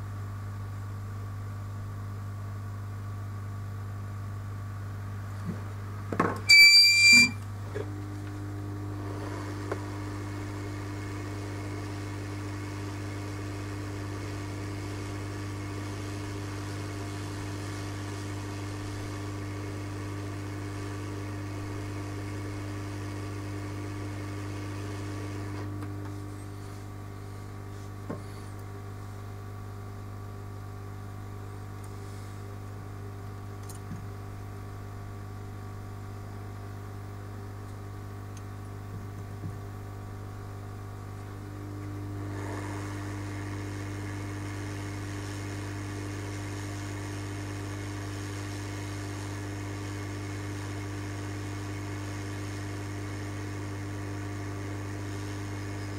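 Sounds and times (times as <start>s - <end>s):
steady electrical hum: 0.0s - 55.9s
short electronic beep: 6.5s - 7.4s.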